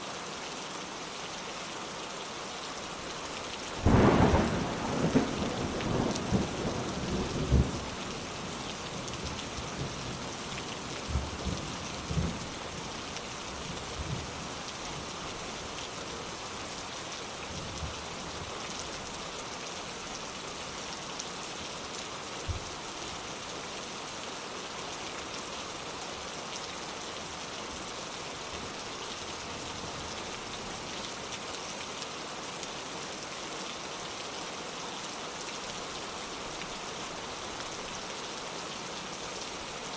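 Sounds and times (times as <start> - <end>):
steady rain: 0.0 - 39.9
thunder rumbling: 3.9 - 7.8.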